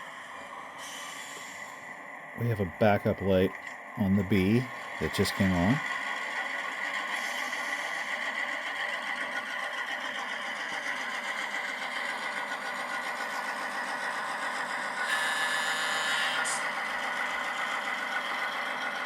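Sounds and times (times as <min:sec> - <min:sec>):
diesel engine sound through small speaker: 0:00.0 - 0:19.0.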